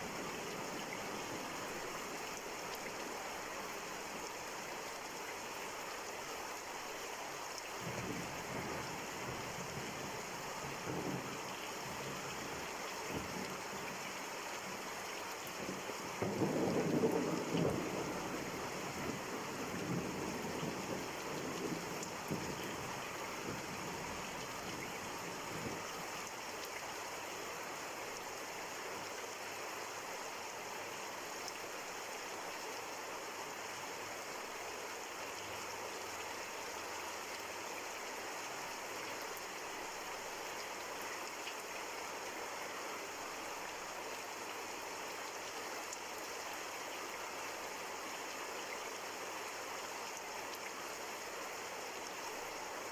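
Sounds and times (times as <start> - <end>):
steady rain: 0.0 - 52.9
low rumble of thunder: 7.8 - 14.0, 15.5 - 25.9.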